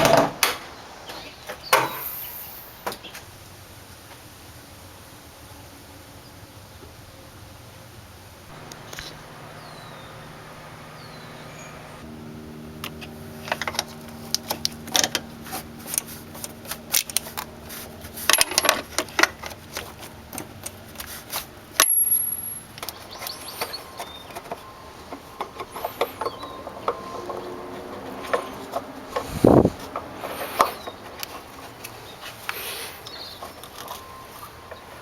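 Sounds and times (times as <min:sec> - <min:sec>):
steady low hum: 0:08.5 - 0:21.8
hard objects clicking and clattering: 0:15.9 - 0:24.6.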